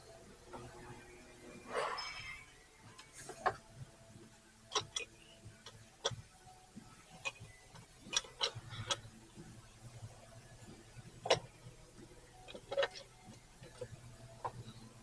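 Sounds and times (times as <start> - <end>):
faint metallic clicks and taps: 2.9 - 14.8.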